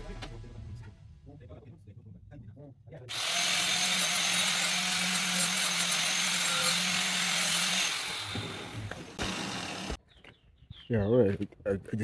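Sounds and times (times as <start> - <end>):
power tool grinding: 3.1 - 10.0.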